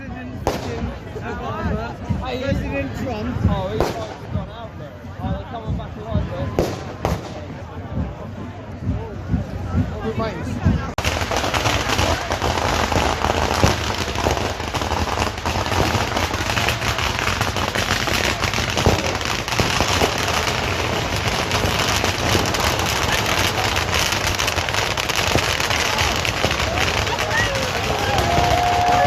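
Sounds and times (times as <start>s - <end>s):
bonfire crackling: 0.0s - 29.0s
sharp fire pops: 0.3s - 1.0s, 3.4s - 4.5s, 6.5s - 7.7s, 11.0s - 29.0s.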